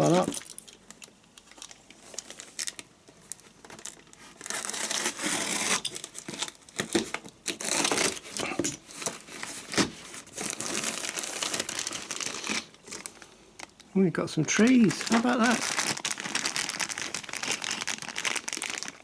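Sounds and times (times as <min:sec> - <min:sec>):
packaging being torn open: 0:01.6 - 0:08.4, 0:09.0 - 0:13.7, 0:14.5 - 0:19.0
rustling: 0:14.4 - 0:19.0.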